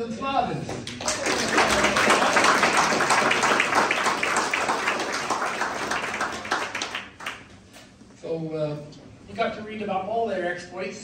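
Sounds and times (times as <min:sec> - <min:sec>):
audience applauding: 0:00.7 - 0:07.6.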